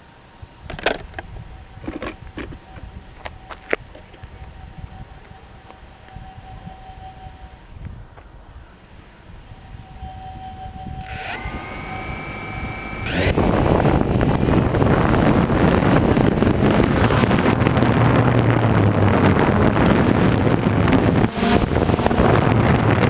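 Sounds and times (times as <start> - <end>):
wind buffeting microphone: 0.5 - 23.0
drone motors whining: 9.3 - 23.0
propeller wash rushing: 11.0 - 23.0.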